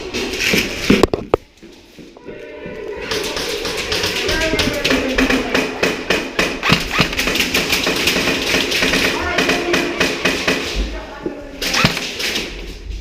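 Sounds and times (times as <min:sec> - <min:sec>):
airsoft gunfire: 0:05.2 - 0:10.6, 0:11.6 - 0:12.2.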